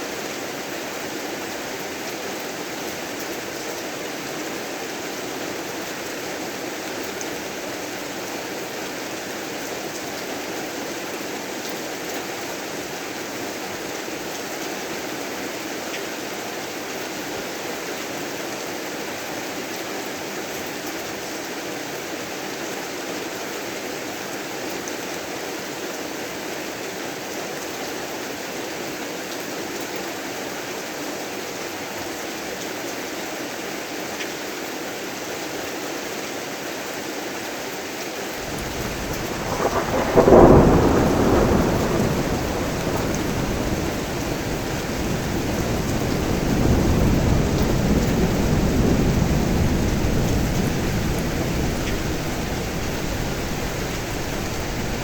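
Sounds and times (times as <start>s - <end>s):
heavy rain falling: 38.4s - 55.0s.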